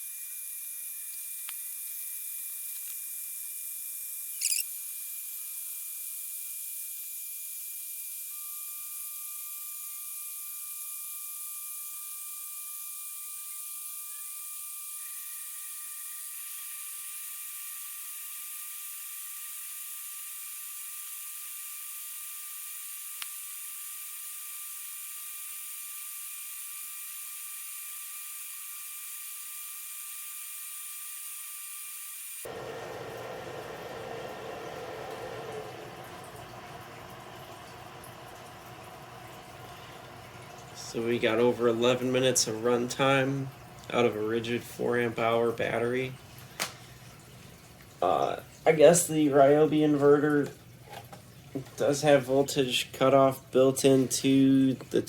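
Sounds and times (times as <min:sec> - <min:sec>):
loud rising chirp: 0:04.4 - 0:04.6
inverter electrical whine and hiss: 0:07.8 - 0:46.9.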